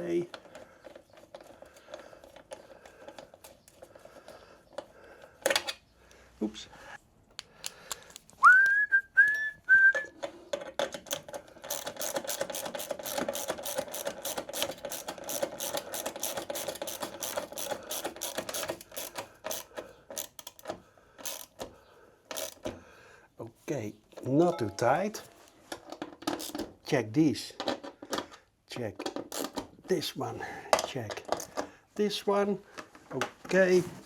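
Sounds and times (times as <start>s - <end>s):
person whistling: 8.4s - 10.2s
ratchet clicking: 11.0s - 21.7s, 22.3s - 22.7s, 26.3s - 26.7s, 29.3s - 29.6s.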